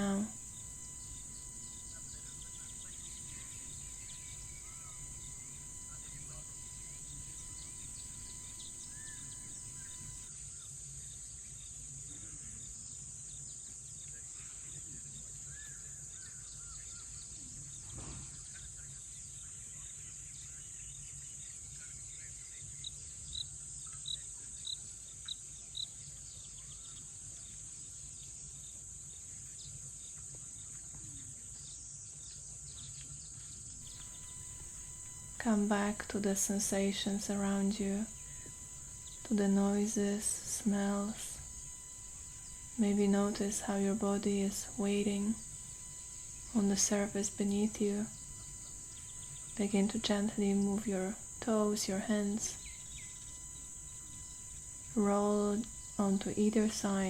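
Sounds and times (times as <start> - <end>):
bird calls: 0.0 - 10.3, 33.9 - 51.4, 52.1 - 56.0
crickets chorus: 0.0 - 10.3, 33.8 - 57.0.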